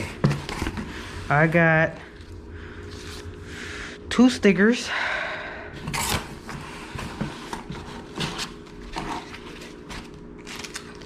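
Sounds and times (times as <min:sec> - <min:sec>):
faint steady hum: 0:00.0 - 0:11.0
packaging rustling: 0:05.9 - 0:11.0.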